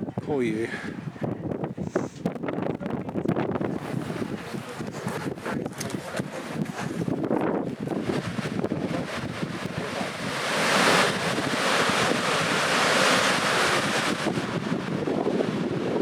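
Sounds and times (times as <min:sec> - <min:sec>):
wind buffeting microphone: 0:00.0 - 0:16.0
waterfall roaring: 0:07.8 - 0:16.0.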